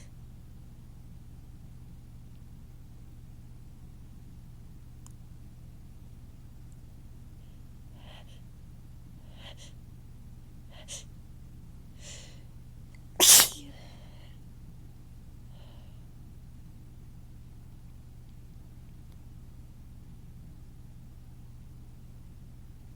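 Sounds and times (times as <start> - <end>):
catching inhales: 12.0 - 12.5
soft breath: 12.0 - 12.5, 15.5 - 16.1
person sneezing: 13.2 - 13.8.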